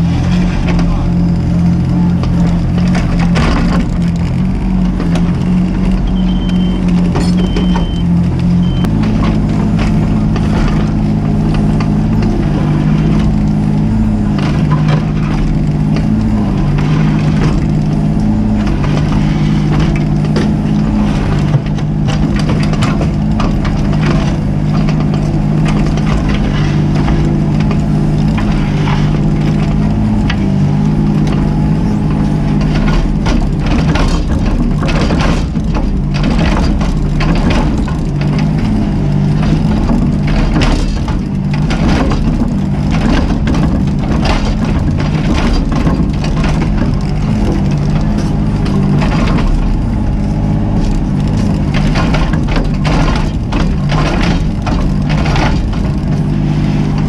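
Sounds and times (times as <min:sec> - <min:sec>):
excavator diesel engine: 0:00.0 - 0:57.0
short high beeps: 0:06.1 - 0:08.9
material cracking and crunching: 0:06.7 - 0:57.0.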